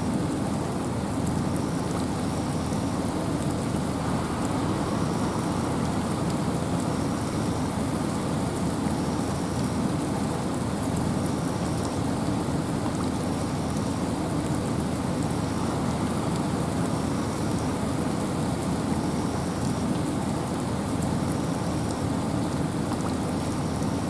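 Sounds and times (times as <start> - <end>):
steady rain and wind: 0.0 - 24.0
raindrop ticks: 10.8 - 14.9, 21.9 - 24.0.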